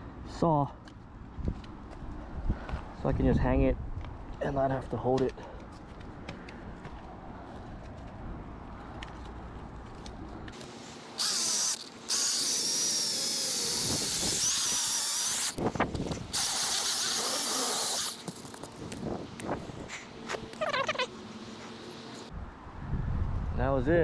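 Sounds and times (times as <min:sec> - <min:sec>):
power saw cutting branch: 0:10.6 - 0:20.6.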